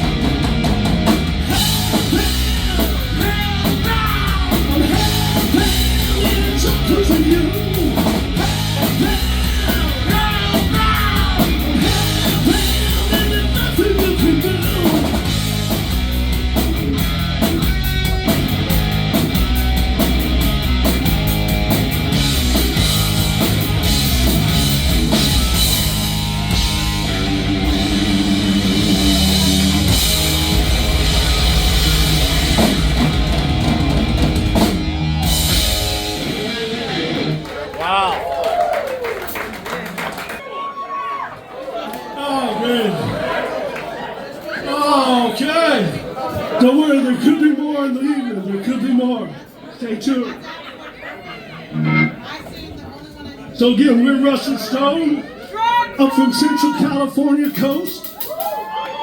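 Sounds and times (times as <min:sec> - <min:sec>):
drum kit: 0:00.0 - 0:37.6
electric guitar lead: 0:00.0 - 0:37.6, 0:51.7 - 0:52.4
bass guitar: 0:00.0 - 0:38.0, 0:51.7 - 0:52.4.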